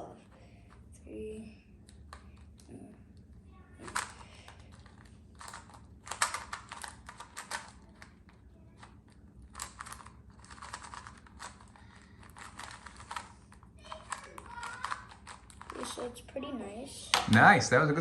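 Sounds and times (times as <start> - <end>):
speed cube clicking: 3.9 - 8.1, 9.5 - 13.3, 13.9 - 16.0.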